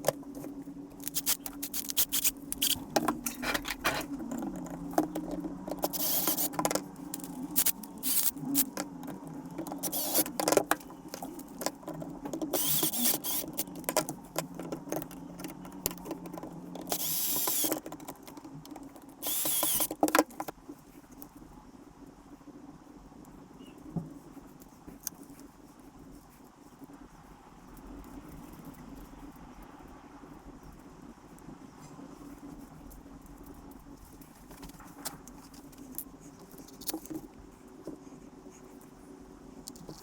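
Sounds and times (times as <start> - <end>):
scraping and rustling: 0.0 - 18.1
faint steady hum: 0.0 - 40.0.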